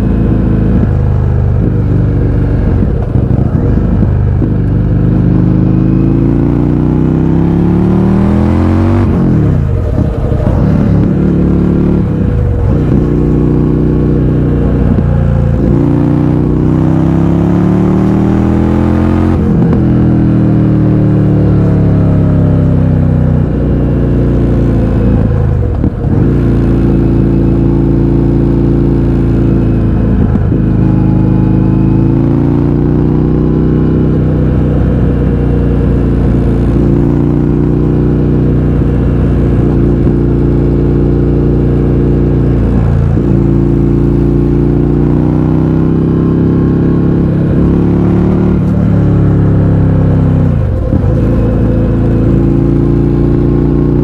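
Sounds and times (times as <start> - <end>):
loud motorcycle engine revving: 0.0 - 54.0.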